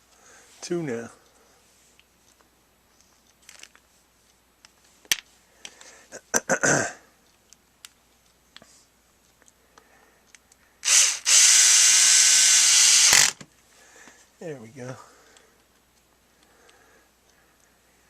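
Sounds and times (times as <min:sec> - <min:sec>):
power screwdriver motor whirring: 0:10.8 - 0:13.4.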